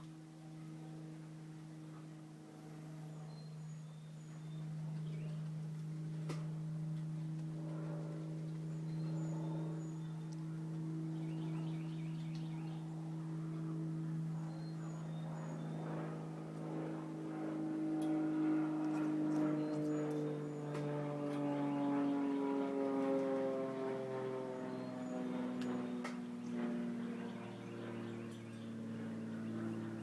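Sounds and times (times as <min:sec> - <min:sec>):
steady low hum: 0:00.0 - 0:30.0
birds chirping: 0:08.2 - 0:30.0.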